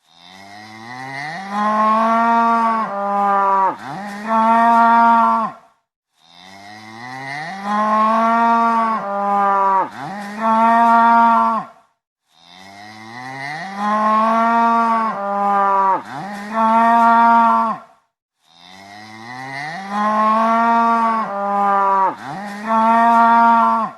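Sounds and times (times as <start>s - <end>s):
cow mooing: 0.1s - 5.6s, 6.2s - 11.8s, 12.4s - 17.9s, 18.5s - 23.9s.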